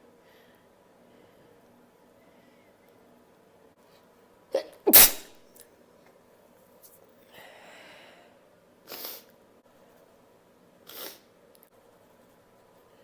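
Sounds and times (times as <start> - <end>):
soft breath: 2.2 - 2.9, 7.3 - 8.4
person sneezing: 4.6 - 5.3.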